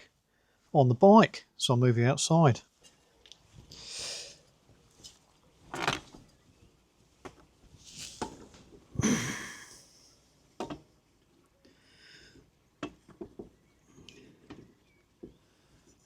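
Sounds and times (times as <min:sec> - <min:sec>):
short rustling: 0:07.4 - 0:08.9.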